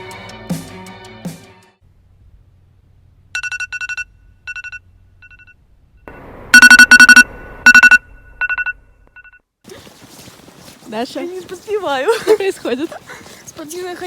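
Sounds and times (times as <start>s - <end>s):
electronic ringing trill: 6.6s - 9.4s.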